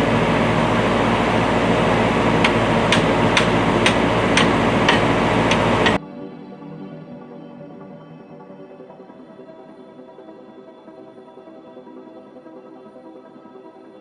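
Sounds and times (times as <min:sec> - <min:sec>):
backhoe engine running: 0:00.0 - 0:06.0
sharp ticks: 0:01.8 - 0:06.0.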